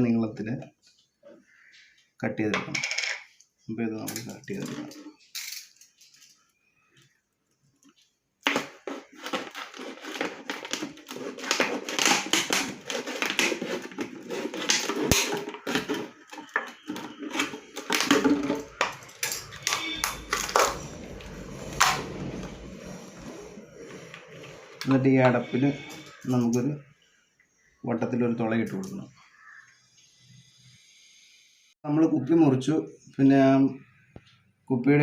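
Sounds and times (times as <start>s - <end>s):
plastic bottle crackling: 7.5s - 20.9s.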